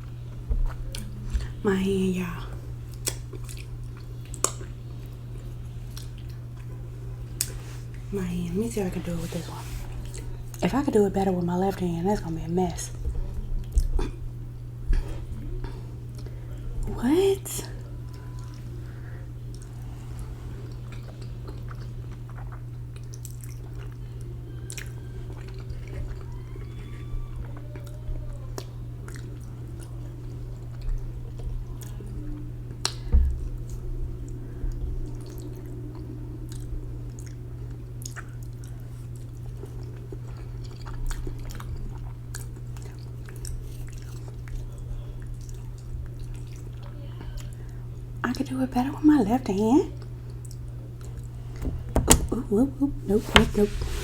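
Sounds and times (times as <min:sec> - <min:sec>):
steady low hum: 0:00.0 - 0:54.0
person chewing noodles: 0:02.8 - 0:08.1, 0:17.8 - 0:33.1, 0:35.2 - 0:47.5.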